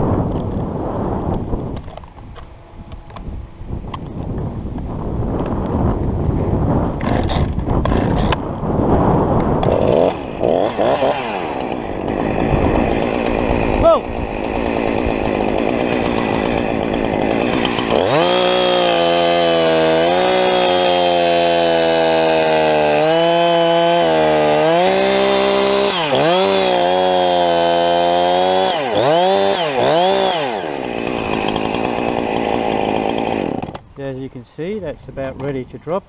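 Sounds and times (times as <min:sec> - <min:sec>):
chainsaw cutting wood: 0:07.0 - 0:33.9.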